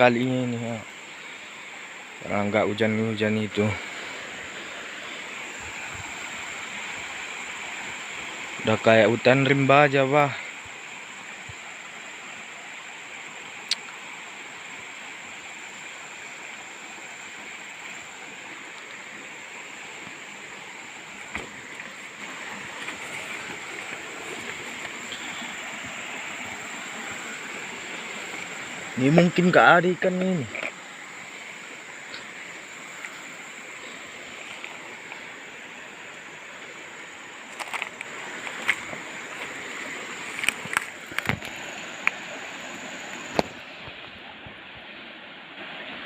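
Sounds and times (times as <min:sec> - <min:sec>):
outdoor background hiss: 0:00.0 - 0:46.0
stream water flowing: 0:00.0 - 0:46.0
faint ticks: 0:13.6 - 0:14.0, 0:32.0 - 0:35.3, 0:40.3 - 0:42.3.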